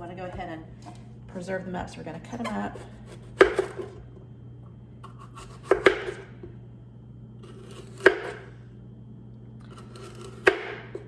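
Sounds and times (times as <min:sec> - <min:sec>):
knife chopping on cutting board: 0:02.8 - 0:03.9, 0:05.0 - 0:06.3, 0:07.9 - 0:08.5, 0:10.0 - 0:11.0.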